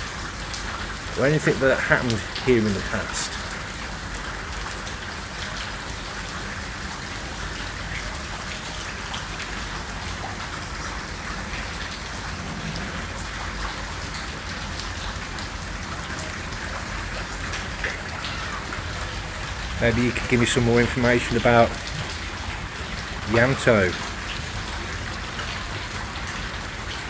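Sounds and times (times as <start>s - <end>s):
heavy rain falling: 0.0s - 27.0s
raindrops striking close by: 0.0s - 27.0s.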